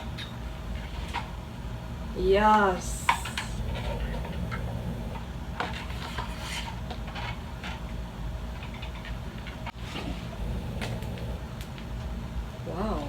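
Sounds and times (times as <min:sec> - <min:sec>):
steady low hum: 0:02.0 - 0:06.2, 0:09.7 - 0:13.0.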